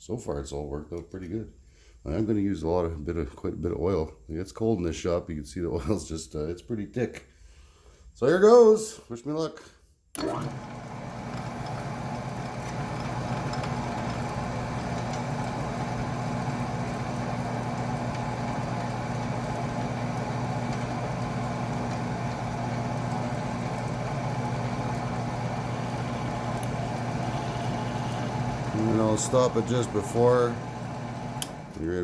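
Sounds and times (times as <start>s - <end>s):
metal lathe motor hum: 10.2s - 32.0s.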